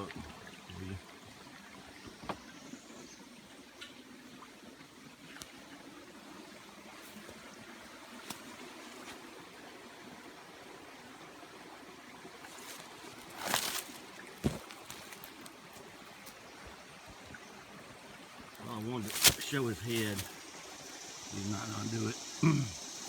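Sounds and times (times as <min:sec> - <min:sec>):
creek water trickling: 0:00.0 - 0:23.0
loud rustle: 0:19.0 - 0:20.4.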